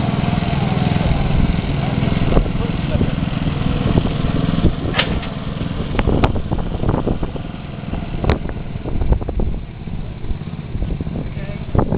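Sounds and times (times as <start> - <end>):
small engine running: 0.0 - 11.9
sharp clicks or knocks: 4.9 - 5.4.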